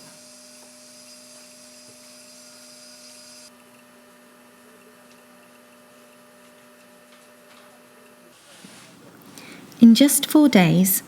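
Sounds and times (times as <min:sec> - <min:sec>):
faint electrical hum: 0:00.0 - 0:11.0
constant hiss: 0:08.3 - 0:11.0.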